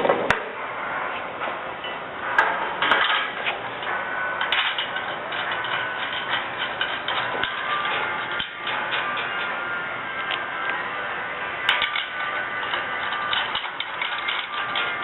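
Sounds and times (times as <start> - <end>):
metal bolts clicking and tapping: 4.4 - 9.5, 11.7 - 15.0.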